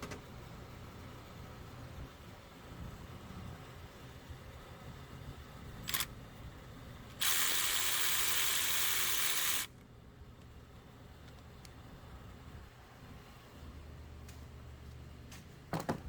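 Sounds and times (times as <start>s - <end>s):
pneumatic ratchet hissing: 7.2s - 9.7s.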